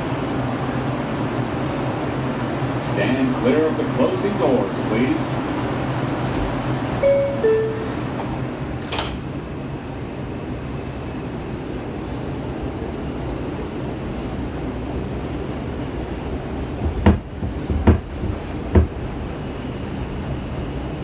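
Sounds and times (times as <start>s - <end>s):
ventilation hum: 0.0s - 9.1s
train rumble: 0.0s - 21.0s
two-note door chime: 7.0s - 8.2s
doors shutting knock: 16.9s - 19.1s.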